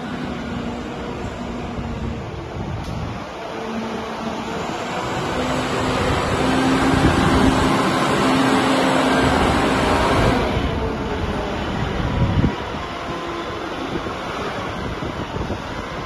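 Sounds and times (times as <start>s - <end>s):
dense rushing noise: 4.4s - 16.0s.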